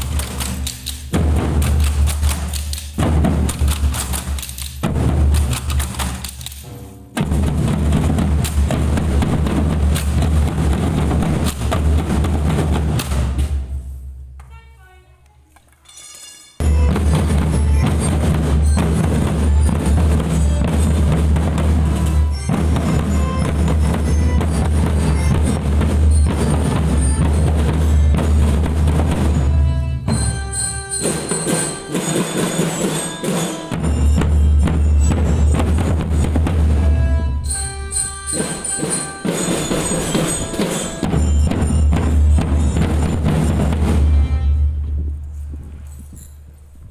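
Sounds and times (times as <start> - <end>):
marching drum band: 0.0 - 6.5, 7.1 - 14.2, 16.6 - 45.6
mallet bell notes: 15.9 - 44.8.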